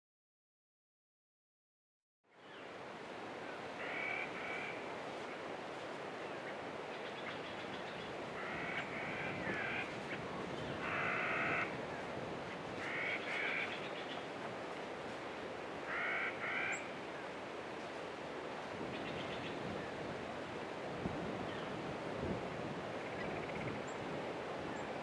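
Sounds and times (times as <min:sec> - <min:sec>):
crow cawing: 0:03.8 - 0:04.8, 0:08.4 - 0:09.9, 0:10.8 - 0:11.7, 0:12.8 - 0:13.7, 0:15.8 - 0:16.9.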